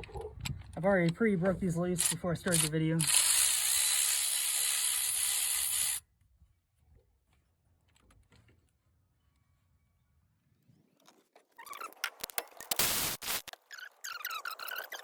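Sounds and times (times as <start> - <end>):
electric ratchet spinning bolt: 2.0 - 6.0.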